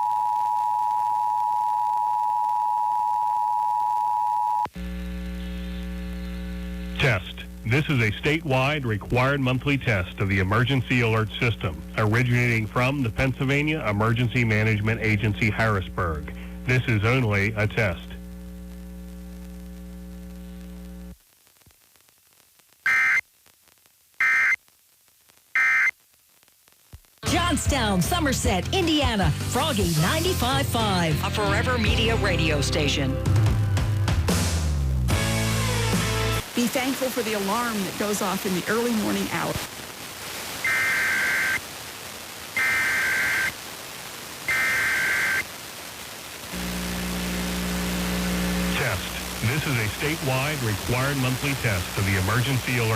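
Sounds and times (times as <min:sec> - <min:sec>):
electrical hum: 0:00.0 - 0:24.6, 0:36.4 - 0:52.9
steady hiss: 0:04.8 - 0:27.0, 0:35.8 - 0:52.9.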